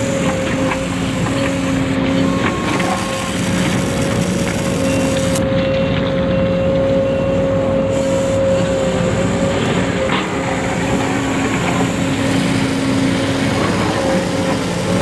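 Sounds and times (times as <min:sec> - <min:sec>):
rough grinding noise: 0:00.0 - 0:05.5, 0:08.6 - 0:15.0
small electric motor whine: 0:00.0 - 0:05.8.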